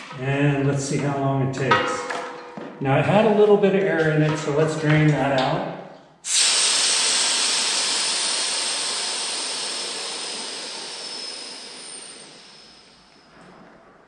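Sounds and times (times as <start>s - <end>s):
compressed air hissing from tank: 6.2s - 13.3s.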